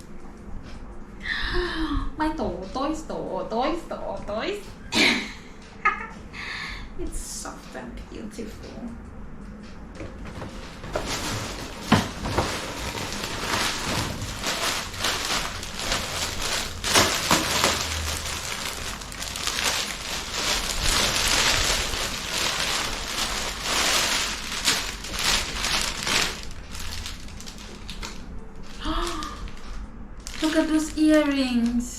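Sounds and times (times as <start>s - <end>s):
gift packaging crinkling: 10.6s - 31.9s.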